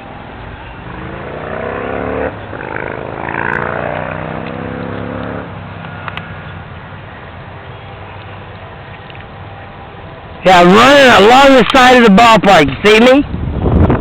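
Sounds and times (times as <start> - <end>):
engine with wavering pitch: 0.0 - 10.8
steady background noise: 0.0 - 14.0.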